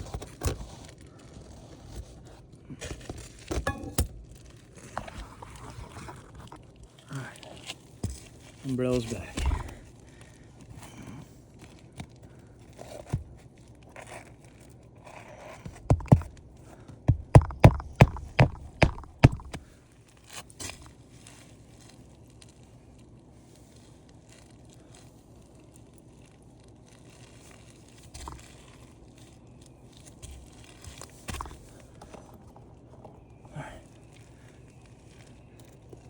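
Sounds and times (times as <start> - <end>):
rustling and handling noises: 0.0 - 36.0
sharp knocks: 15.7 - 16.3, 17.1 - 19.6.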